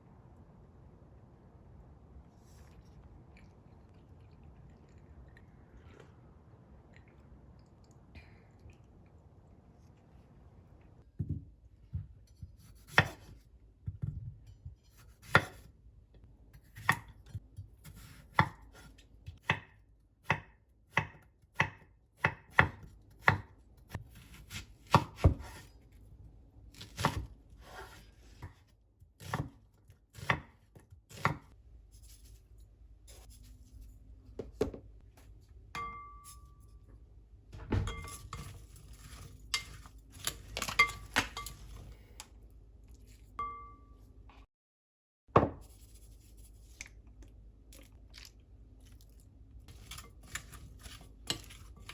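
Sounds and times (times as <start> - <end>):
knife chopping on cutting board: 12.3 - 14.1, 14.9 - 15.7, 16.6 - 17.2, 17.8 - 25.7, 26.8 - 28.6, 29.2 - 31.6.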